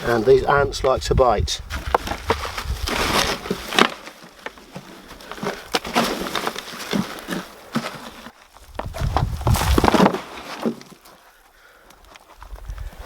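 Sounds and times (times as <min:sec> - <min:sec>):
dry soil rustling and crunching: 0:00.0 - 0:13.0.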